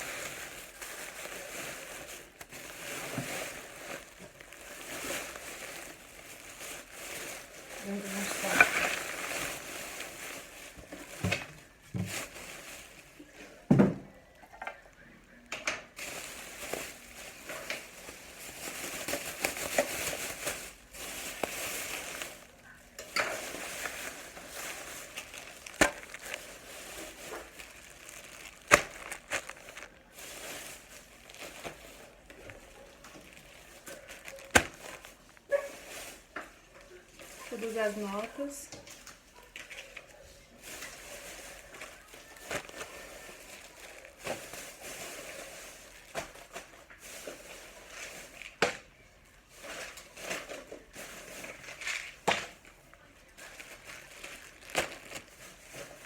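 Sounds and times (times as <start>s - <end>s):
packaging rustling and crinkling: 0.0s - 14.1s, 14.8s - 56.0s.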